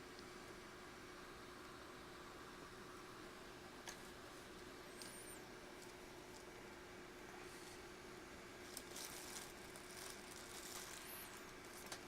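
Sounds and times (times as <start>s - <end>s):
low steady hum: 0.0s - 12.0s.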